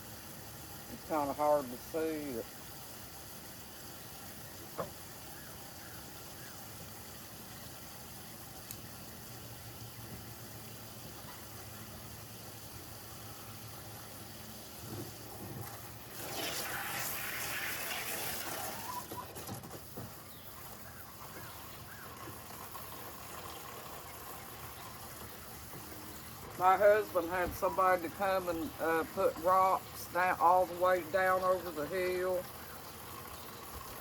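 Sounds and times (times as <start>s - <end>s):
water running outdoors: 0.0s - 34.0s.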